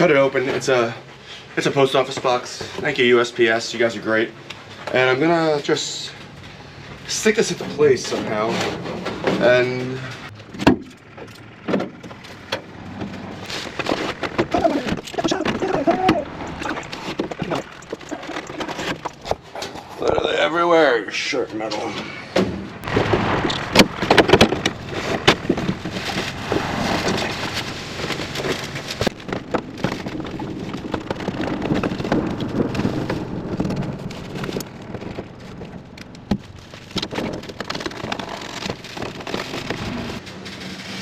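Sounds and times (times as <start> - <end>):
crackling and rustling: 0.0 - 22.0, 22.6 - 41.0
sharp clicks and knocks: 8.6 - 20.3, 22.4 - 26.4.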